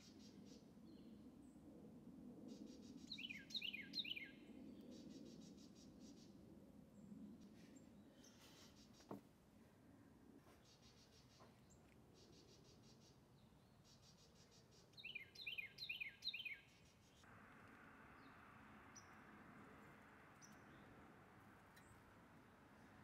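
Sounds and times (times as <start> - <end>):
outdoor background hiss: 0.0 - 23.0
songbird chirping: 2.5 - 6.4, 10.4 - 23.0.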